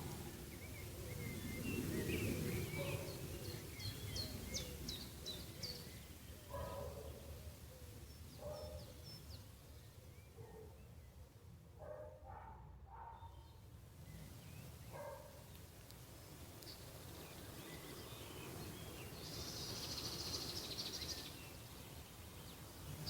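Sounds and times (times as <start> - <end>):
birds chirping: 0.0 - 11.2, 11.8 - 15.7.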